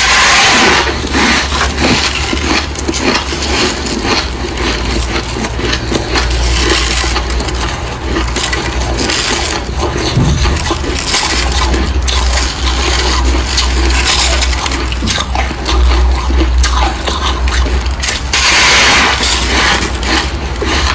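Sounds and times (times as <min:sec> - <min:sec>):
frost being bitten and chewed: 0:00.0 - 0:20.9
low hum: 0:09.8 - 0:12.5.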